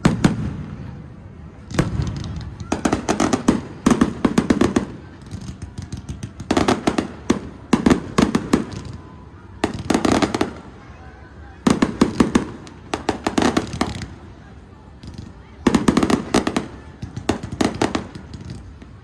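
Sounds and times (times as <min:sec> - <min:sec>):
firework bangs: 0:00.0 - 0:11.0, 0:11.6 - 0:19.0
crackling firework reports: 0:00.0 - 0:19.0.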